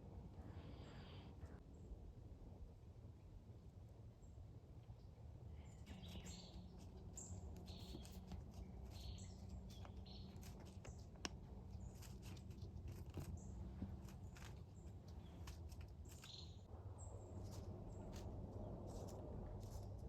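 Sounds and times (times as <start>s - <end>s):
faint bird chirps: 5.6s - 10.5s
light ticks and rustles: 5.7s - 16.6s, 17.4s - 20.0s.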